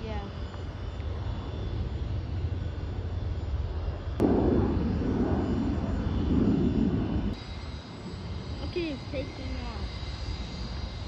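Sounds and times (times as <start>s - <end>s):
jet engine rumble: 0.0s - 11.0s
loud rushing noise: 4.2s - 7.4s.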